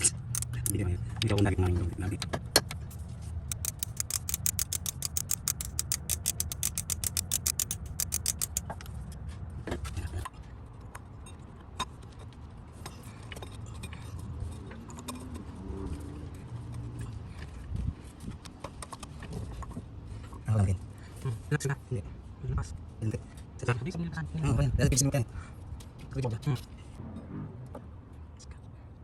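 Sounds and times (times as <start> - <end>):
metallic clicks: 0.0 - 0.8, 3.5 - 8.7
ratchet wrench clicking: 0.0 - 0.8, 3.5 - 8.7.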